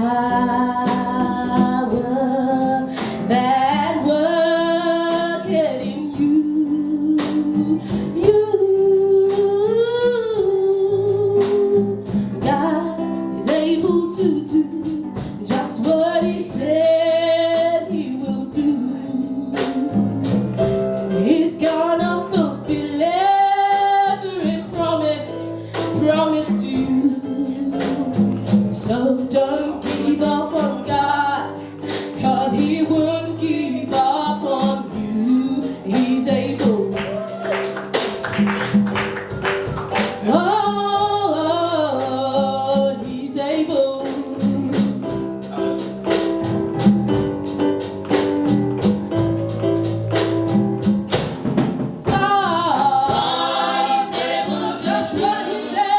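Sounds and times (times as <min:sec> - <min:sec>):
live band playing: 0:00.0 - 0:55.9
voices singing gospel song: 0:52.1 - 0:55.9.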